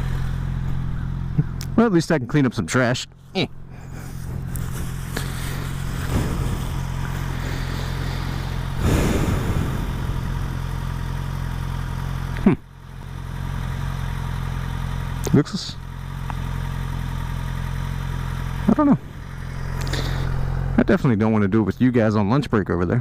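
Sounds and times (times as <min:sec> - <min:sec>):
motorcycle engine idling: 0:00.0 - 0:22.5.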